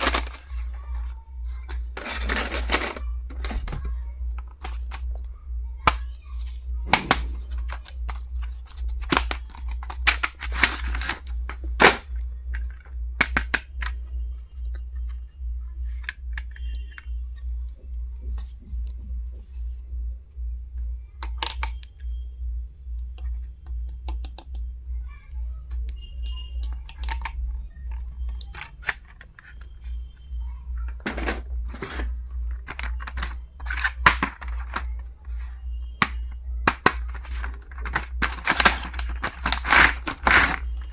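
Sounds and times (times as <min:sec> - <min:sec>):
packaging clicks and crinkles: 0:00.0 - 0:03.8, 0:04.4 - 0:15.3, 0:26.3 - 0:30.2, 0:30.8 - 0:40.9.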